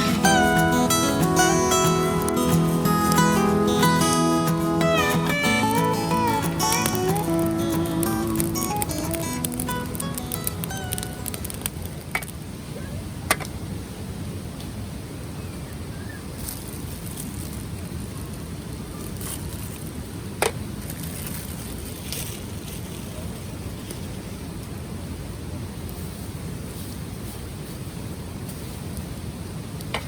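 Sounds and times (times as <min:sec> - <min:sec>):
campfire crackling: 0:00.0 - 0:12.1.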